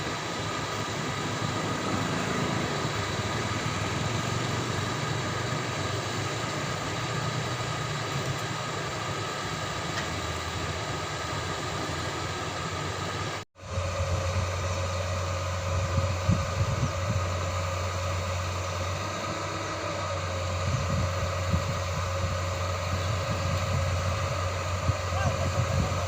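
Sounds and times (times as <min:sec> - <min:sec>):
excavator diesel engine under load: 0:00.0 - 0:26.0.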